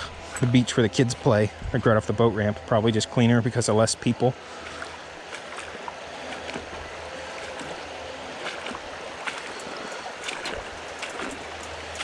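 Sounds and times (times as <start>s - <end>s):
river rushing over rocks: 4.4s - 12.0s.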